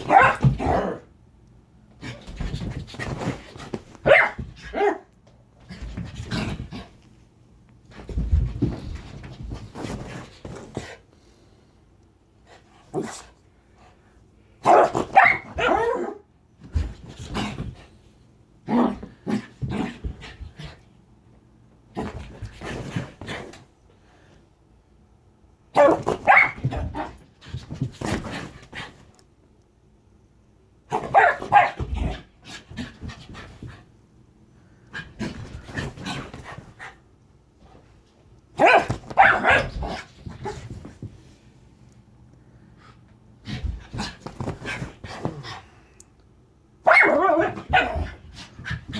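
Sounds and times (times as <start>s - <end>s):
dog barking and grumbling: 0.0s - 1.1s, 46.9s - 48.2s
dog barking and whining: 0.0s - 1.1s, 4.0s - 5.2s, 14.6s - 16.3s, 25.7s - 27.2s, 30.9s - 32.2s, 38.6s - 40.6s, 46.8s - 48.2s.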